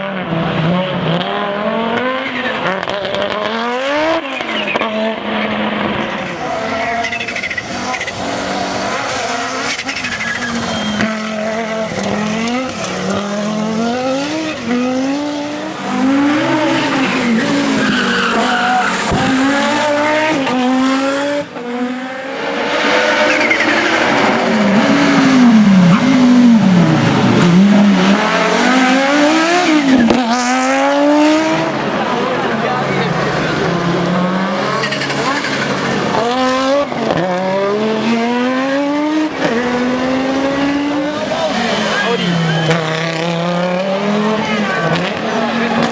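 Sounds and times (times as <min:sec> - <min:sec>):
rally car engine revving: 0:00.0 - 0:45.9
tyres skidding on loose surface: 0:15.2 - 0:21.5, 0:28.1 - 0:45.9.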